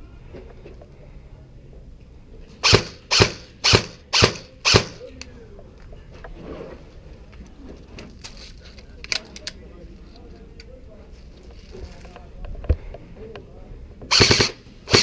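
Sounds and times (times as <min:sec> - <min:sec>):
airsoft gun shots: 0:02.6 - 0:05.0, 0:14.1 - 0:15.0.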